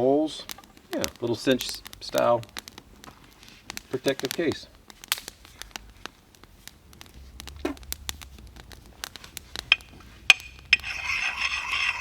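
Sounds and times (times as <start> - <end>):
sharpening stone scraping axe edge: 10.3 - 12.0.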